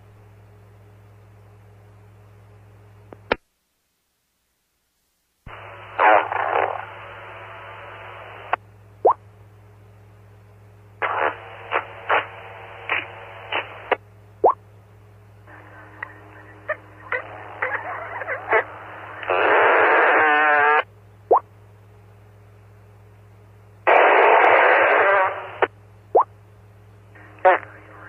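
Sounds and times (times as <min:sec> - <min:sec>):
radio channel hum and hiss: 0:00.0 - 0:28.0
armpit fart noises over radio: 0:05.5 - 0:08.6, 0:11.0 - 0:14.6, 0:15.5 - 0:20.9, 0:23.8 - 0:25.7, 0:27.2 - 0:28.0
radio click: 0:11.0 - 0:14.0, 0:15.6 - 0:19.4.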